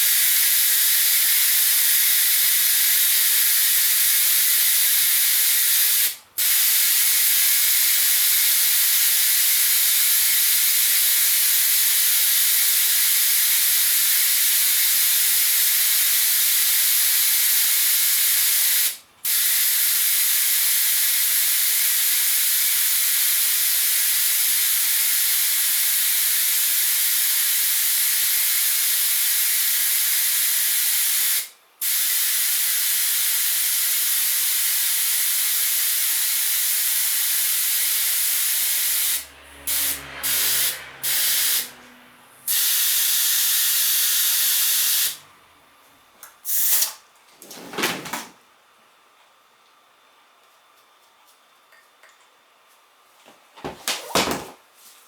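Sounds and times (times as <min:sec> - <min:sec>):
compressed air hissing: 0:37.3 - 0:41.8, 0:42.4 - 0:45.2, 0:46.5 - 0:47.0.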